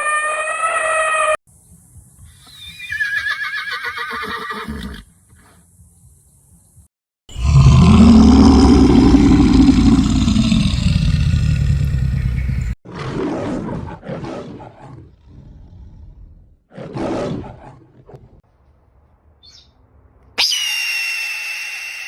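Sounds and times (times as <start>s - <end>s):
large animal roaring: 7.3s - 17.8s.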